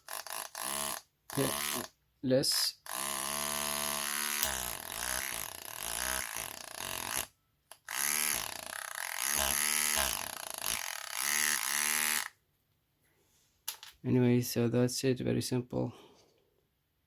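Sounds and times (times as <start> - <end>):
small electric motor whine: 0.0 - 1.9, 2.9 - 12.4.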